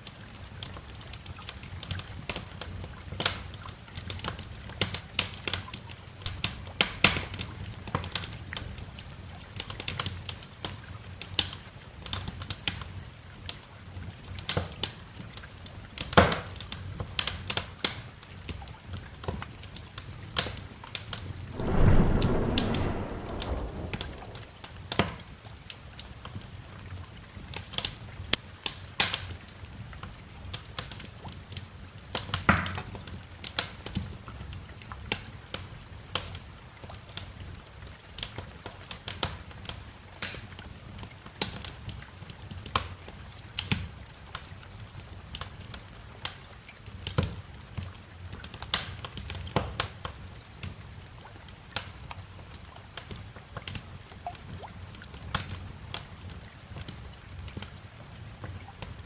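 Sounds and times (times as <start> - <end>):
steady low rumble: 21.5 - 24.6
wood fire crackling and popping: 21.6 - 24.5.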